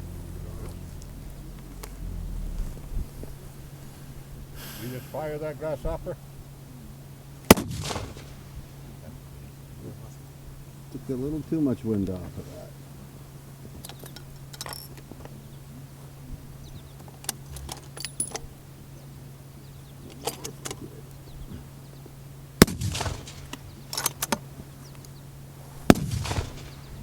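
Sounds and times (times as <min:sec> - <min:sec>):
rifle shots with echo: 0:07.5 - 0:08.8, 0:22.6 - 0:23.8, 0:25.8 - 0:27.0.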